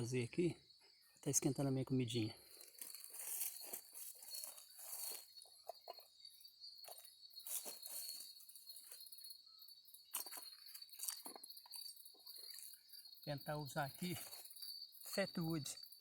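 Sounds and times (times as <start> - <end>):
insects chirring: 0.0 - 16.0
twigs rustling and cracking: 2.5 - 6.1, 10.1 - 12.8.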